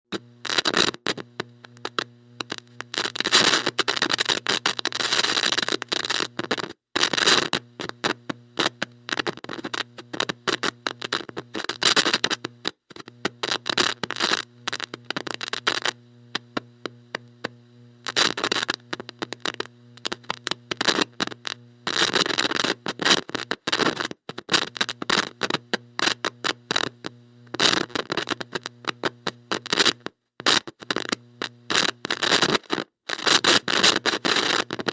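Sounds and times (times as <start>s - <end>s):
static crackle: 0.1s - 34.9s.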